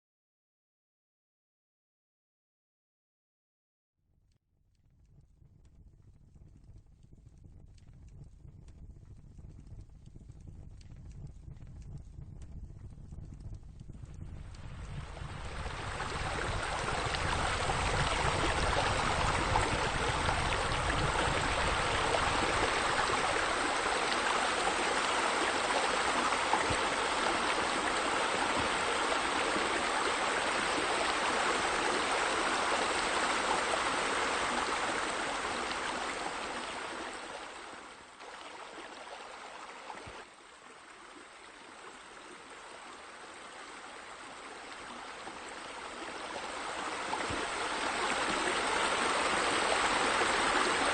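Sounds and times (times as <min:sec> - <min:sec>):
running water splashing: 0:14.5 - 0:50.9.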